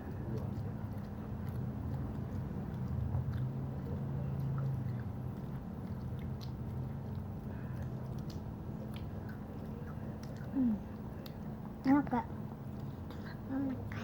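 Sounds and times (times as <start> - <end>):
person chewing food: 0.0 - 11.8
steady low hum: 0.0 - 14.0
wet mouth clicks: 0.3 - 11.5.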